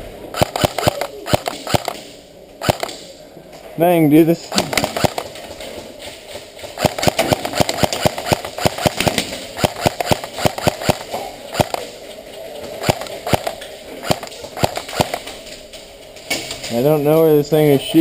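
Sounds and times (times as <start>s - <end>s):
airsoft gun shots: 0.3s - 3.1s, 4.5s - 5.4s, 6.8s - 11.9s, 12.8s - 15.3s.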